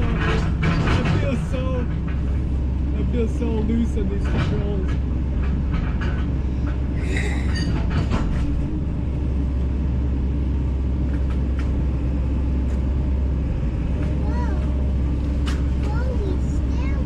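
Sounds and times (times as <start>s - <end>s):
knocks and rattles: 0.0s - 9.3s
diesel engine rumbling: 0.0s - 17.0s.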